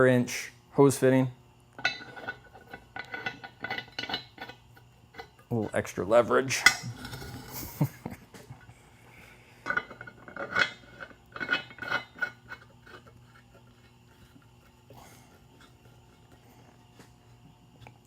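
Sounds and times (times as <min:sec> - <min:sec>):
faint steady hum: 0:00.0 - 0:18.0
metal clinking and scraping: 0:01.8 - 0:07.8, 0:09.6 - 0:16.4.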